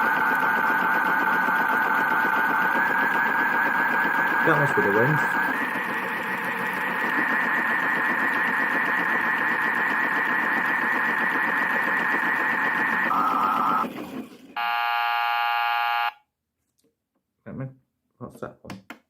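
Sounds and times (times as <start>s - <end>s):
toy warbling electronic tone: 0.0s - 9.2s, 9.9s - 13.9s
harsh electronic buzzer: 0.0s - 13.9s, 14.6s - 16.3s
noisy whir: 0.0s - 16.1s.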